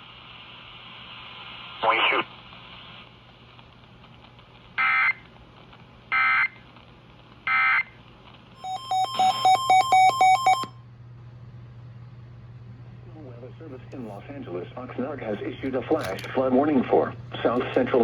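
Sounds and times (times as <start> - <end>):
loud electronic beeps: 8.6 - 10.7.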